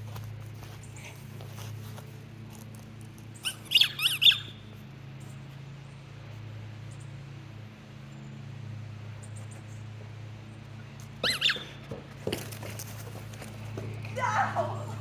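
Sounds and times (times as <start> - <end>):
squeaky dog toy squeaking: 3.4 - 4.5, 11.2 - 11.8.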